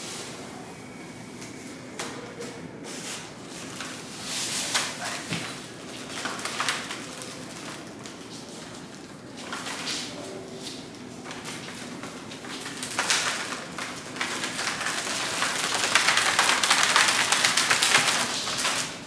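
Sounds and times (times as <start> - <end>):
dense crinkly rustling: 2.9 - 19.0.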